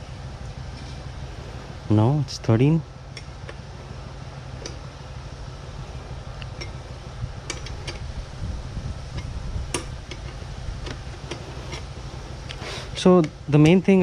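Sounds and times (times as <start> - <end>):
low hum: 0.0 - 14.0
spanner clicking on metal: 6.6 - 6.8, 7.5 - 8.1, 9.1 - 11.9, 13.1 - 14.0.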